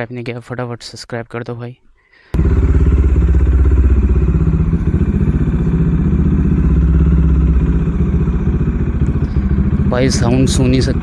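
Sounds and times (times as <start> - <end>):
motorcycle exhaust pulses: 2.4 - 11.0.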